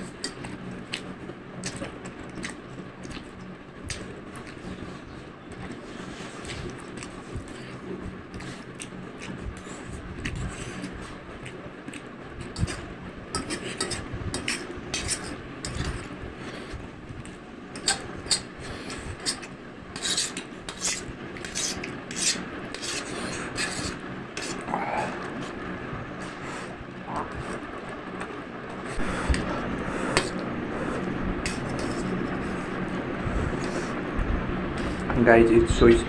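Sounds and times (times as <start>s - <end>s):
utensil scraping against bowl: 0.0s - 1.0s, 12.4s - 16.8s, 17.7s - 27.6s, 28.7s - 35.2s
person slurping and chewing noodles: 0.0s - 35.1s.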